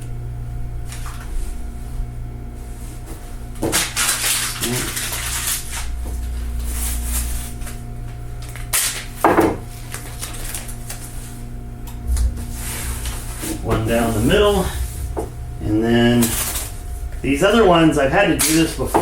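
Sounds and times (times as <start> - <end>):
steady low hum: 0.0 - 19.0
tape ripping off roll: 3.6 - 7.8, 8.4 - 11.2
tape tearing: 3.7 - 5.9, 8.4 - 9.2, 9.8 - 11.1
sharp knocks: 9.2 - 9.7.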